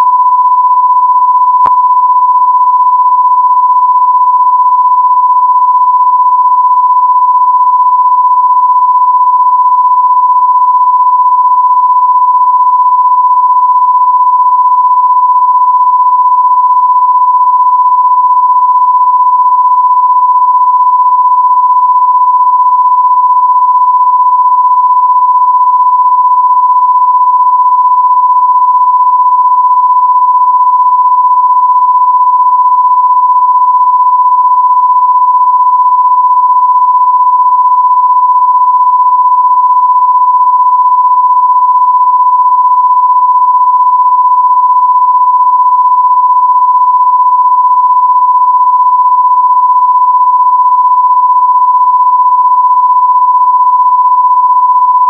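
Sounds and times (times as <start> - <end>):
steady pure tone: 0.0 - 55.0.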